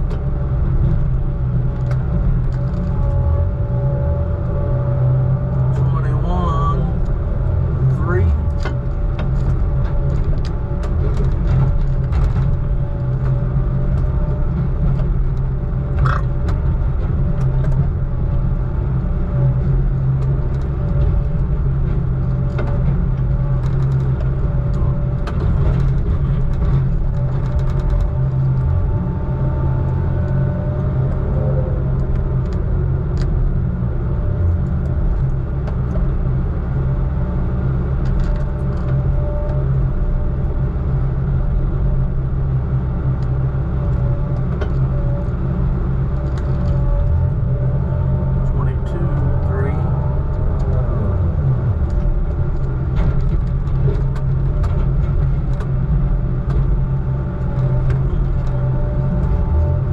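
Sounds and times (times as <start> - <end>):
heavy diesel engine running: 0.0 - 37.9, 38.5 - 59.9.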